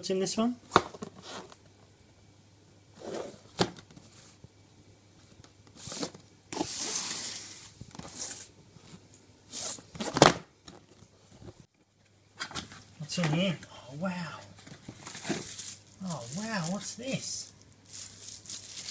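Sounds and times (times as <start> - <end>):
wrapping paper tearing and crumpling: 15.0 - 17.2, 17.8 - 18.9.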